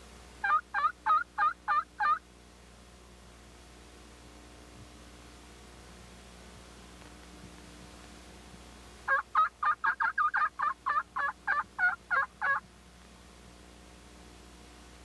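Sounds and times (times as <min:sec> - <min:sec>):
turkey yelps: 0:00.4 - 0:02.2, 0:09.1 - 0:12.6.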